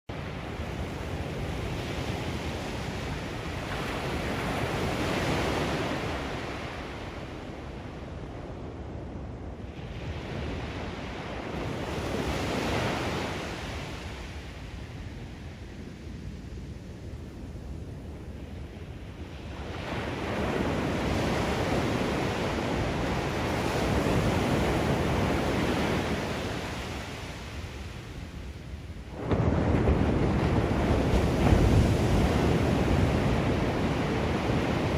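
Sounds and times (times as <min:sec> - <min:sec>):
ocean waves breaking on beach: 0:00.1 - 0:34.9.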